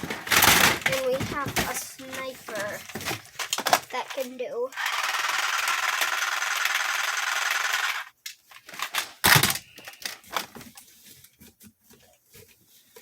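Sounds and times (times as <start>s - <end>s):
plastic toy knocks and clicks: 0.0s - 8.0s, 8.7s - 10.5s
toy gun rattling buzz: 0.2s - 1.2s, 3.4s - 10.2s.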